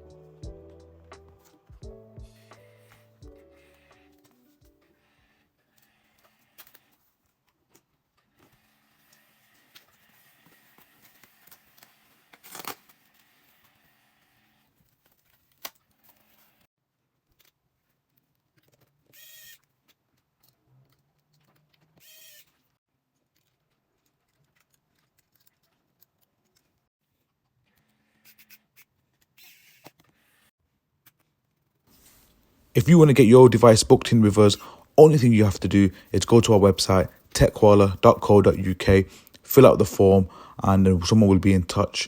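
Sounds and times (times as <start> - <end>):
small tools clicking and tapping: 17.3 - 30.2.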